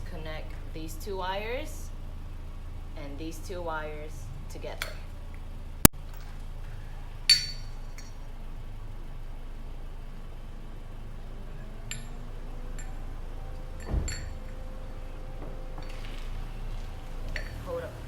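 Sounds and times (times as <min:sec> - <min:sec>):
metallic clinks of small hardware: 0:13.8 - 0:14.5.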